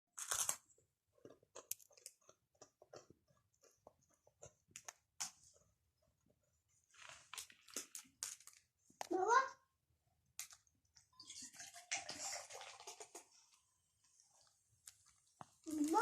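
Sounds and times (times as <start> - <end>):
baby crunching a biscuit: 0.2 - 5.3.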